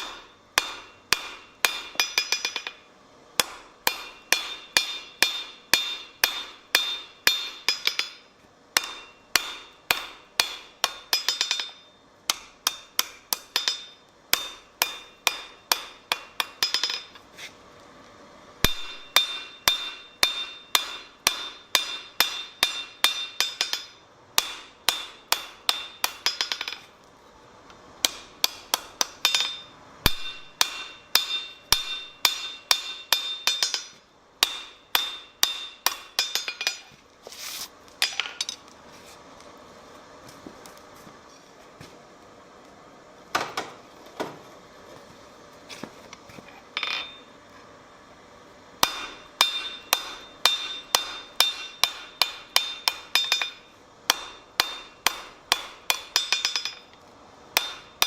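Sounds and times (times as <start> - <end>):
hammer striking steel on anvil: 0.0 - 17.2, 18.6 - 26.9, 28.0 - 37.0, 46.8 - 47.3, 48.8 - 57.0, 57.6 - 58.0.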